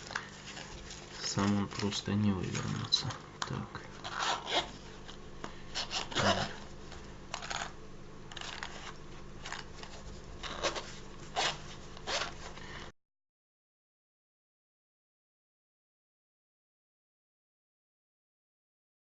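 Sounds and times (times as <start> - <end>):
fabric case rubbing and rustling: 8.3 - 12.6.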